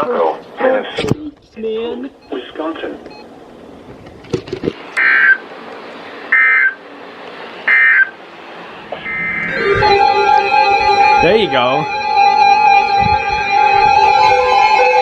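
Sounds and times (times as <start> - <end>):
low radio hiss: 0.0 - 12.0
warbling digital data tones: 7.7 - 12.4
music with steady tones: 8.8 - 15.0.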